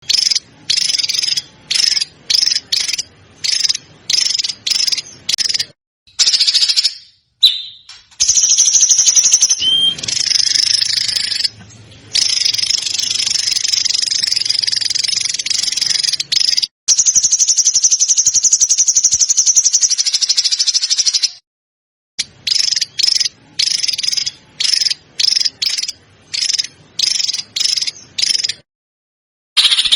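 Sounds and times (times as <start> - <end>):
songbird fast trills: 6.2 - 11.5.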